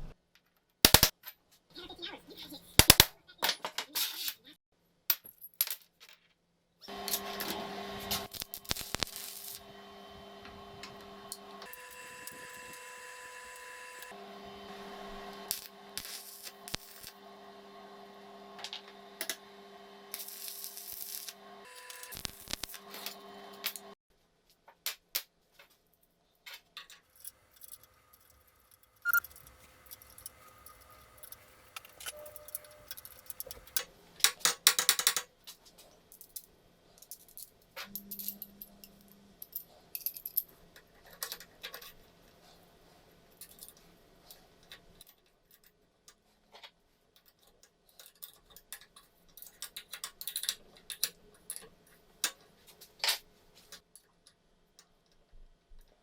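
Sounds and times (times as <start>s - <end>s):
metal parts clinking: 26.8s - 35.2s, 36.1s - 42.0s.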